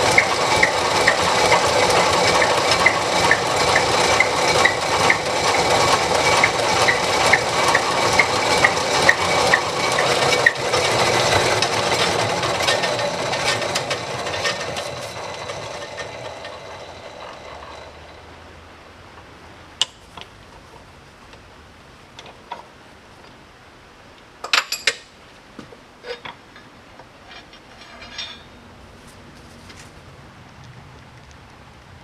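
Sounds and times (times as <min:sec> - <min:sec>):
motor-driven machine ticking: 0:00.0 - 0:16.6.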